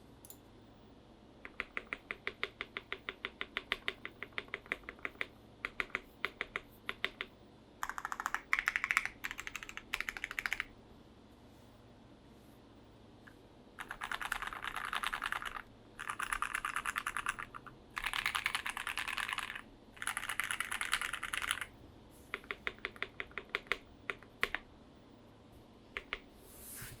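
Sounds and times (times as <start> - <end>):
mechanical keyboard typing: 1.5 - 10.7, 13.8 - 21.7, 22.3 - 24.7, 26.0 - 26.2.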